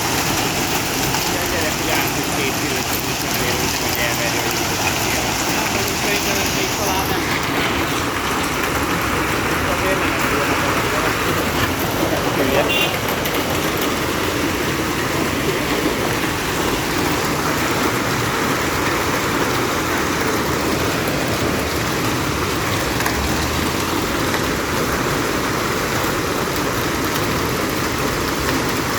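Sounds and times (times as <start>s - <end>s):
hail and rain downpour: 0.0s - 28.9s.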